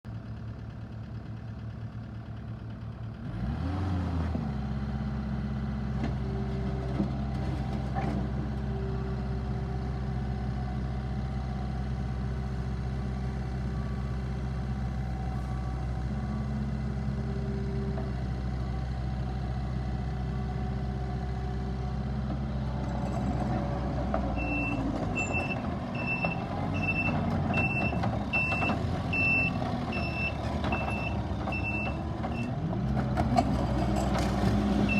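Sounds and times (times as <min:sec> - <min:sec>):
diesel engine running: 0:00.1 - 0:34.9
reversing alarm beeping: 0:24.4 - 0:32.5.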